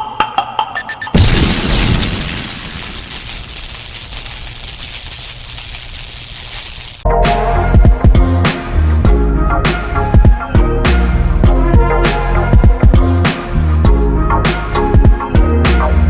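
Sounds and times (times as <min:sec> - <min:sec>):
explosion-like boom: 0:01.2 - 0:04.6.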